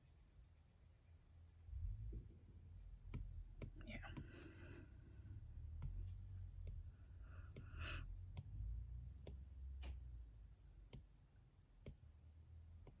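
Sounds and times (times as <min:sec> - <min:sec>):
stylus tapping tablet screen: 0:02.8 - 0:04.8, 0:05.6 - 0:13.0.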